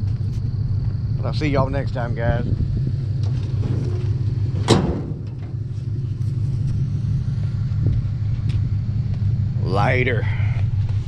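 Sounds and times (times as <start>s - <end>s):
truck engine idling: 0.0s - 11.0s
tailgate slamming shut: 3.2s - 5.8s.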